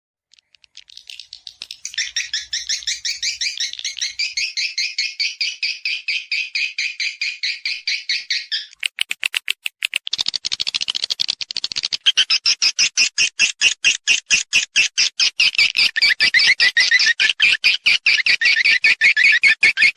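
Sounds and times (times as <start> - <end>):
high twittering bird chirps: 0.3 - 9.0, 10.0 - 14.0, 14.9 - 19.9
sharp clicking: 8.7 - 12.2.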